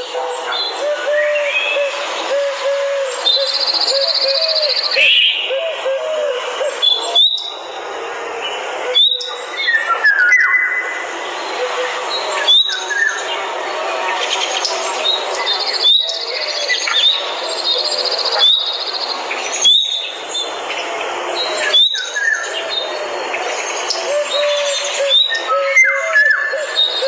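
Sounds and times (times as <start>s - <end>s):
birds chirping: 0.0s - 27.0s
dense bird chorus: 0.0s - 27.0s
fast high bird trills: 0.6s - 6.0s.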